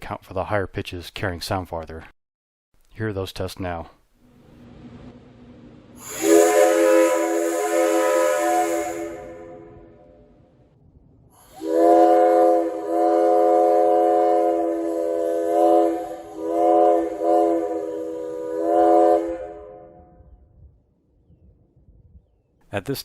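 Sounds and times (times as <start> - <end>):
air hiss: 6.0 - 9.4
steam whistle chord blasts: 6.0 - 10.4, 11.4 - 20.1.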